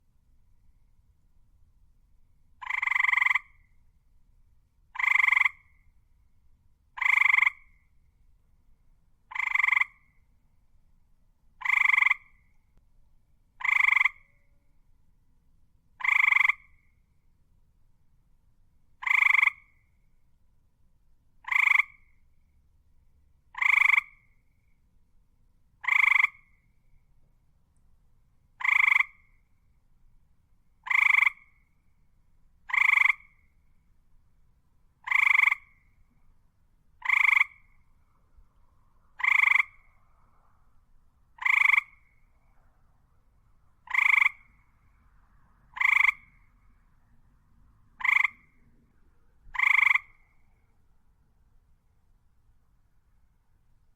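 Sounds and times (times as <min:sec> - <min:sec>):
frog croaking: 0:02.6 - 0:03.8, 0:04.9 - 0:05.8, 0:07.0 - 0:07.9, 0:09.3 - 0:10.2, 0:11.6 - 0:12.5, 0:13.6 - 0:14.5, 0:16.0 - 0:16.9, 0:19.0 - 0:19.9, 0:21.4 - 0:22.2, 0:23.5 - 0:24.4, 0:25.8 - 0:26.6, 0:28.6 - 0:29.4, 0:30.8 - 0:31.8, 0:32.7 - 0:33.5, 0:35.0 - 0:35.9, 0:37.0 - 0:37.8, 0:39.1 - 0:40.0, 0:41.3 - 0:42.2, 0:43.8 - 0:44.6, 0:45.7 - 0:46.6, 0:48.0 - 0:48.6, 0:49.5 - 0:50.6.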